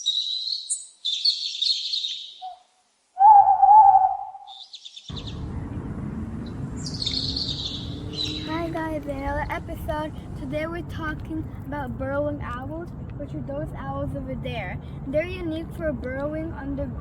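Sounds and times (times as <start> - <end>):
birds chirping: 0.0 - 2.6, 3.2 - 10.8
wavering bird call: 0.0 - 5.5, 6.4 - 8.7
bird trill: 0.0 - 8.7
outdoor background hiss: 0.0 - 17.0.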